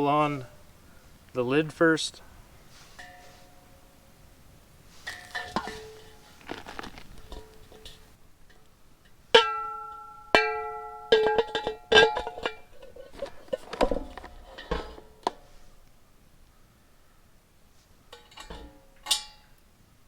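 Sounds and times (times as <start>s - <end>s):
metal lid clanging: 2.8s - 4.2s, 4.9s - 15.6s, 18.1s - 19.6s.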